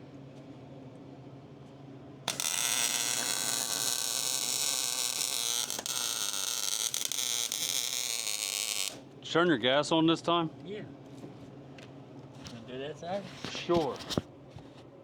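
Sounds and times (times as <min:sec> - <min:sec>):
welding arc crackling: 0:02.3 - 0:09.0.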